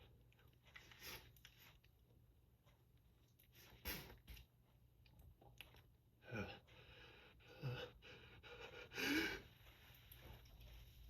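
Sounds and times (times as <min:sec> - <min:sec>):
person sniffing: 0:03.6 - 0:04.2
short gasping breaths: 0:06.3 - 0:09.6.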